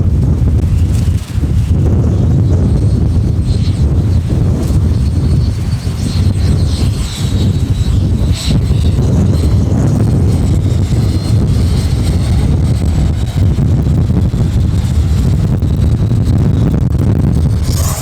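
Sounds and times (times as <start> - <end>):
distant model jet whine: 0.0 - 18.0
wind buffeting microphone: 0.0 - 18.0.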